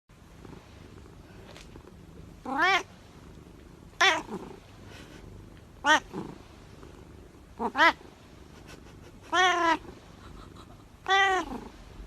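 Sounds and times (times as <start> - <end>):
cat meowing: 2.5 - 2.9, 4.0 - 4.3, 5.8 - 6.1, 7.6 - 8.0, 9.3 - 9.8, 11.0 - 11.7.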